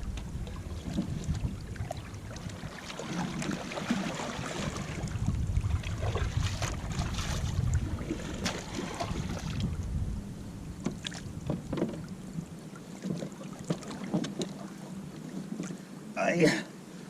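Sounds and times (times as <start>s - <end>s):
water splashing and lapping: 0.0s - 9.9s, 10.6s - 16.1s
wind rumble on microphone: 0.0s - 16.2s
knocks on kayak: 10.8s - 12.0s.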